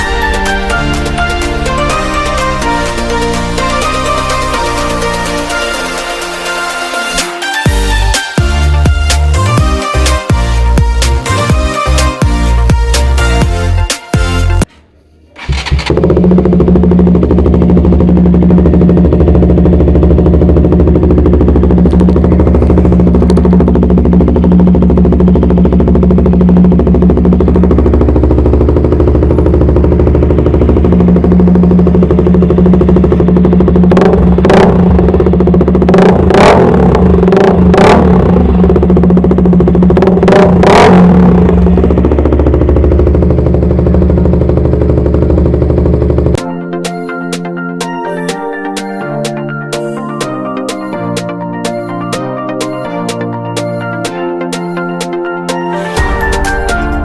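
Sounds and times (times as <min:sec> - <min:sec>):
motorcycle engine idling: 0:14.6 - 0:46.4
quick throttle blips: 0:14.6 - 0:46.4.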